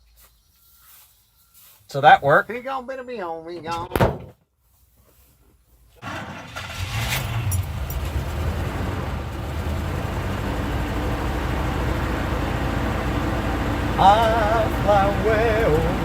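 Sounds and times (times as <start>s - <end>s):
car engine running: 6.0s - 16.0s.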